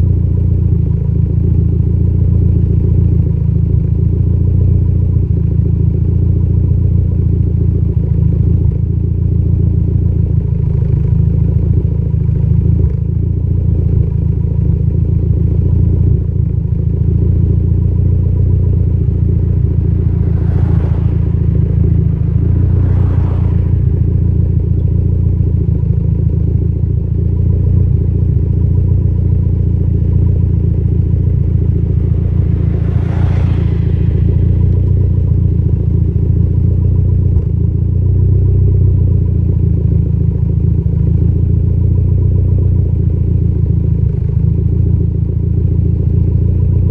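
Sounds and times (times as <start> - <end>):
engine idling with misfire: 24.0 - 46.9.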